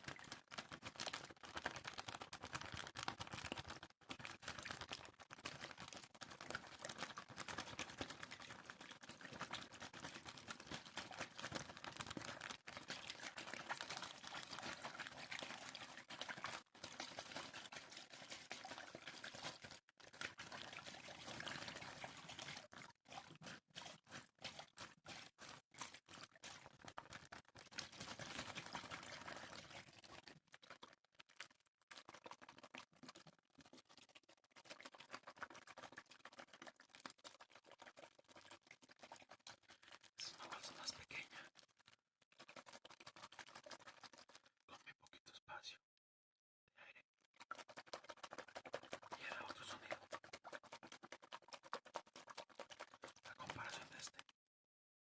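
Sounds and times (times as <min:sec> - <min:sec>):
water pouring and sloshing: 0:00.0 - 0:44.8, 0:47.3 - 0:54.3.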